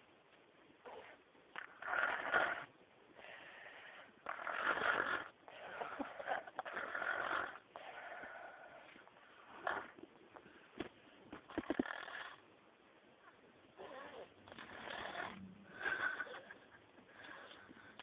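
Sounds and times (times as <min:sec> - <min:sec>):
boy snoring: 0:00.9 - 0:08.8, 0:11.5 - 0:12.4, 0:13.8 - 0:16.6.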